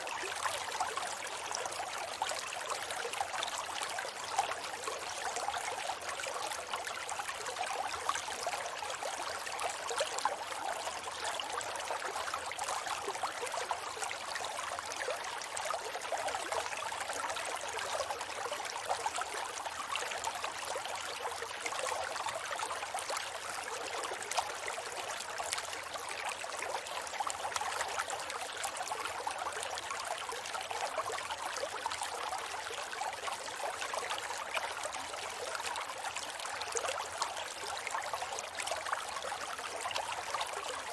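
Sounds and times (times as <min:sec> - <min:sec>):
small splashes and trickles: 0:00.0 - 0:40.9.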